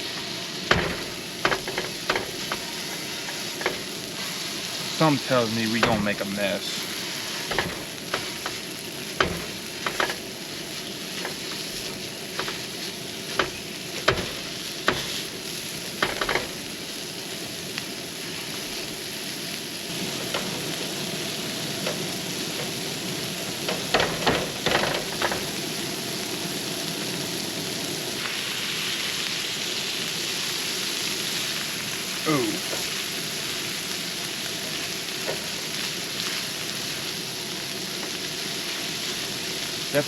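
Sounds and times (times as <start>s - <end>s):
sausage sizzling in a frying pan: 0.0s - 40.0s
utensil knocking and scraping pan: 0.7s - 5.0s, 5.7s - 6.2s, 7.1s - 15.2s, 15.9s - 16.6s.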